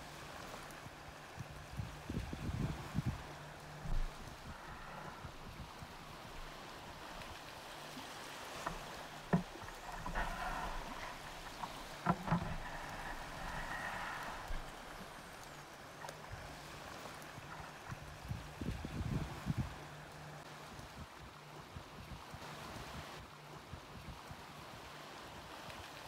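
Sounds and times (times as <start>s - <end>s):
paddle splashing in water: 0.0s - 20.5s.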